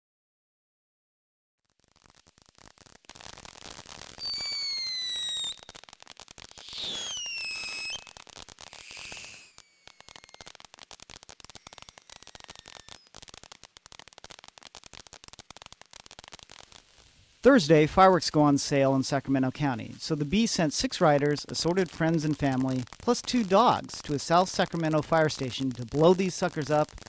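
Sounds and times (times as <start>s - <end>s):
fireworks crackling: 1.6s - 27.0s
fireworks whistles falling in pitch: 2.0s - 14.4s.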